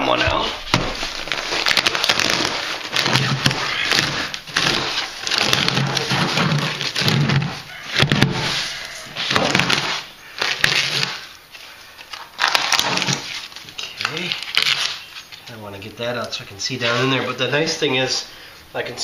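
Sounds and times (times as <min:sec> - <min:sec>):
plastic crinkling and tearing: 0:00.6 - 0:15.5.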